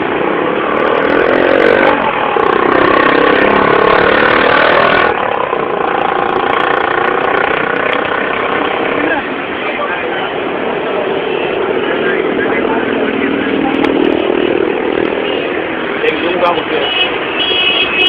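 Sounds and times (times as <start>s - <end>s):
vehicle engine running: 0.0s - 10.0s.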